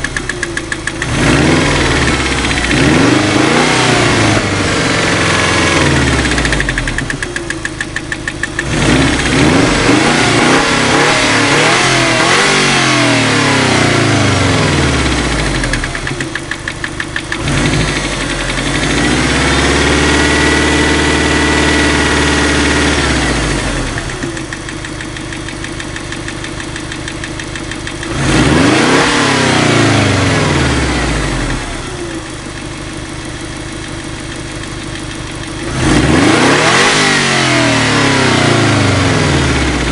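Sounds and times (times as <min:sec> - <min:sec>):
rapid rhythmic engine knock: 0:00.0 - 0:12.7, 0:14.0 - 0:19.9, 0:23.8 - 0:28.6, 0:32.0 - 0:36.1
car engine revving: 0:00.0 - 0:33.0, 0:34.3 - 0:39.9.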